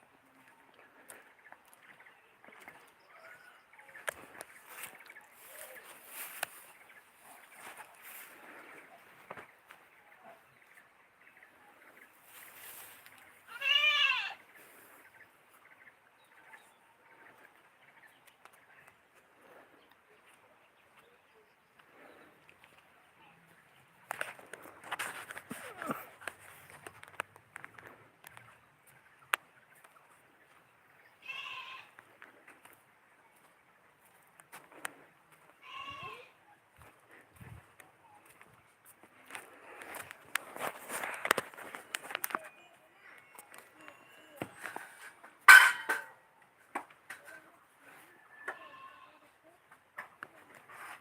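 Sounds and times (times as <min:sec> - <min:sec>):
faint background noise: 0:00.0 - 0:51.0
animal bleat: 0:13.5 - 0:14.4, 0:31.2 - 0:32.0, 0:35.6 - 0:36.4, 0:48.3 - 0:49.3.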